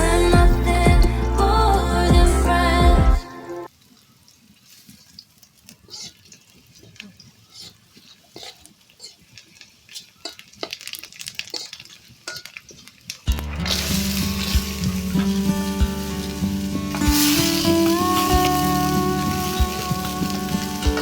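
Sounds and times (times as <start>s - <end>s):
faint frying: 3.7s - 21.0s
spatula scraping frying pan: 5.9s - 21.0s.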